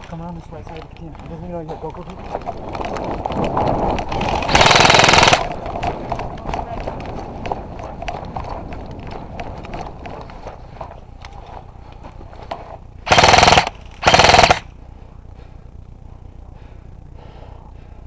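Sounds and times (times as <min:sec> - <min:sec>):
airsoft rifle bursts: 0:04.2 - 0:05.6, 0:13.0 - 0:14.8.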